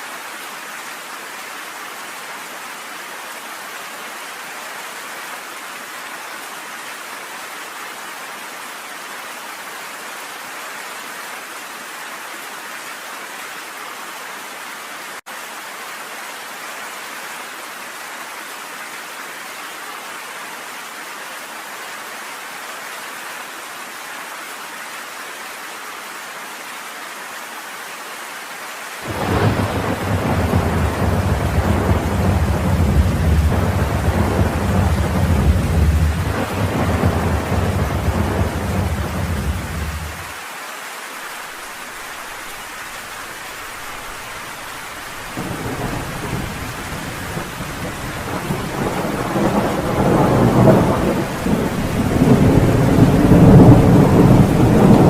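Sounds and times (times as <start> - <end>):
heavy rainfall: 0.0 - 55.0
thunder rumbling: 29.1 - 40.3, 45.2 - 55.0.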